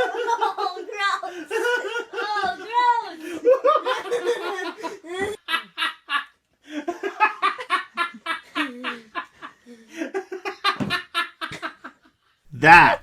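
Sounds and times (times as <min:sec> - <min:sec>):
people laughing: 0:03.4 - 0:06.0.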